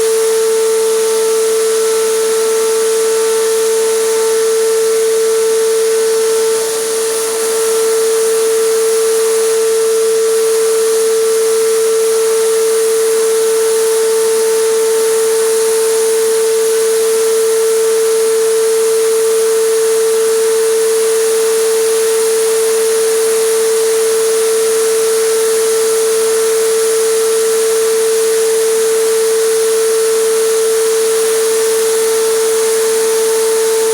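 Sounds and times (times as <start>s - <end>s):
air compressor whine: 0.0s - 33.9s.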